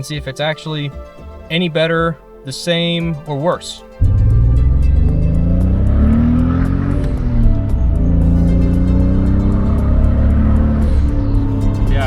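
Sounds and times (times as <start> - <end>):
car engine misfiring: 4.0 - 12.0.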